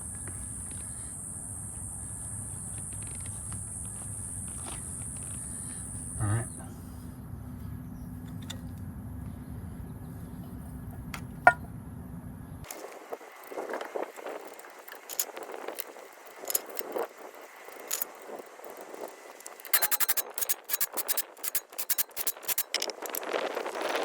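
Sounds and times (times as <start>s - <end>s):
sharp clicks: 19.4s - 23.3s
metal hand tools clinking: 19.7s - 23.3s.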